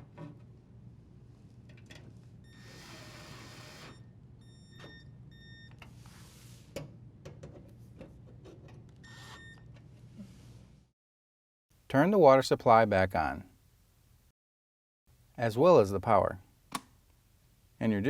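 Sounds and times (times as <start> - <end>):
cordless drill motor whining: 2.5 - 4.0.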